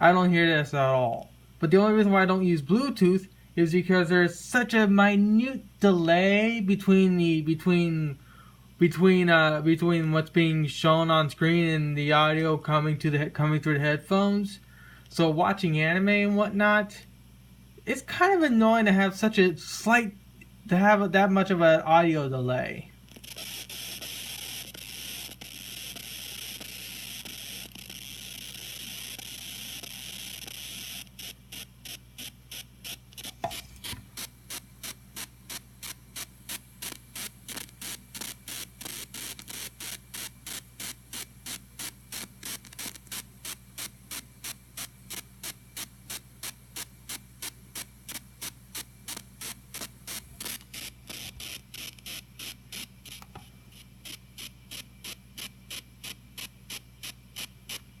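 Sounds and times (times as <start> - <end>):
electrical interference hiss: 17.8 - 58.0
fast pulsing buzz: 23.0 - 58.0.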